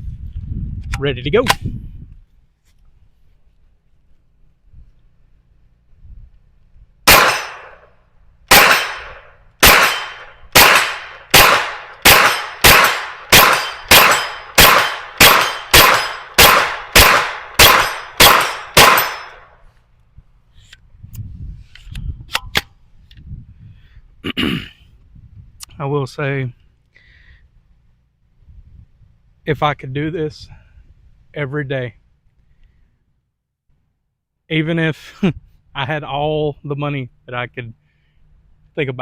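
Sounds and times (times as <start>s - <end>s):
carbine gunshots echoing: 7.1s - 7.9s, 8.5s - 19.5s.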